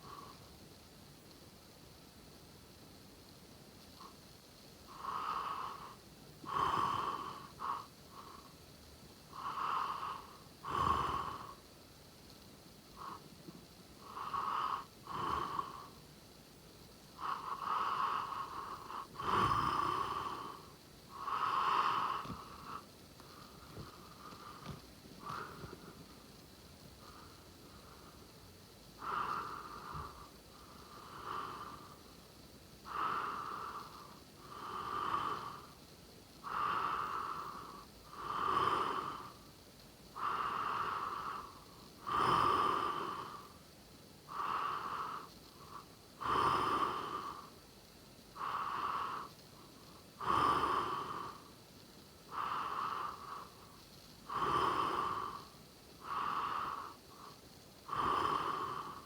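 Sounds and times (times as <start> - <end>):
person snoring: 4.9 - 7.9, 9.4 - 11.6, 17.2 - 22.9, 36.4 - 39.4, 40.2 - 43.5, 44.3 - 47.5, 50.2 - 51.4, 54.3 - 59.0.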